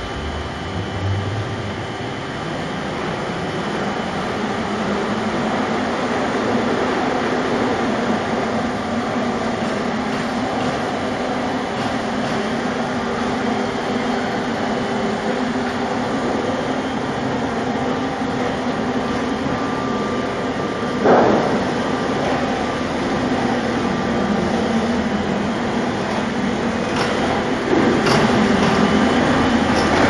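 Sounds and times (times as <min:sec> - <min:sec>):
veneer lathe machinery rumbling: 0:00.0 - 0:04.9, 0:05.8 - 0:30.0.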